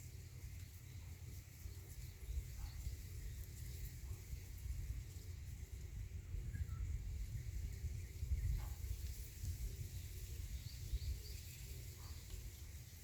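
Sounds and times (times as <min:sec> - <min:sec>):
faint bird chirps: 0:06.2 - 0:13.0.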